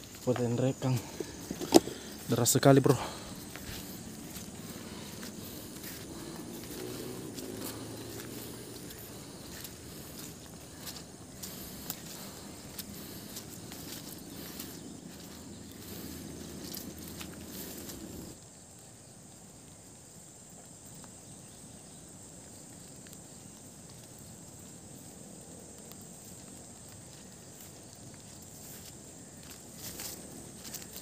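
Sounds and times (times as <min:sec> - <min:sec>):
footsteps on muddy trail: 0:00.0 - 0:18.4, 0:25.8 - 0:31.0
high insect drone: 0:00.0 - 0:31.0
outdoor hiss: 0:00.0 - 0:31.0.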